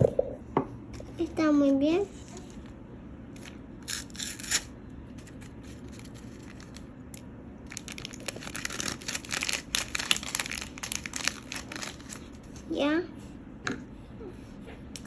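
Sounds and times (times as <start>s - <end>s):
plastic wrapper crinkling: 5.2s - 12.5s.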